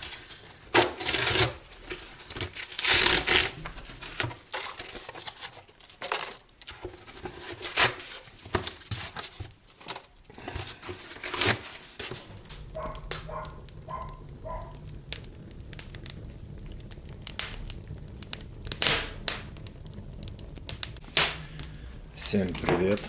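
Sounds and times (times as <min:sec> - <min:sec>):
crinkling and rustling handling: 0:00.0 - 0:23.0
low steady hum: 0:12.1 - 0:23.0.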